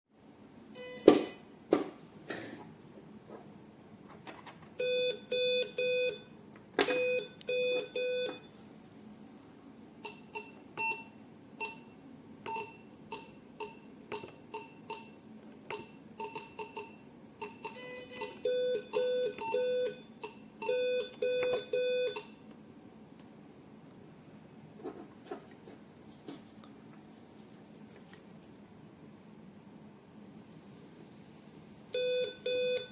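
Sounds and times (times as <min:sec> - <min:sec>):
patient monitor alarm beeps: 0:00.8 - 0:01.6, 0:04.8 - 0:08.6, 0:10.0 - 0:22.5, 0:31.9 - 0:32.9.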